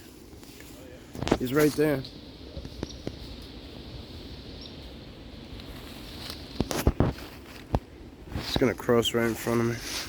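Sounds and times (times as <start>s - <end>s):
wind: 0.0s - 10.0s.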